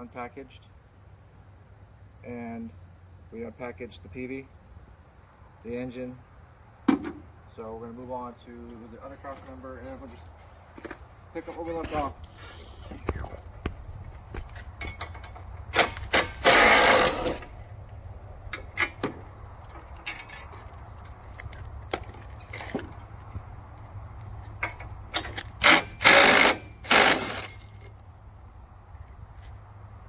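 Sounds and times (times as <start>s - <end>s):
loud short rasping bursts: 12.2s - 13.4s, 15.8s - 17.5s, 25.6s - 27.6s.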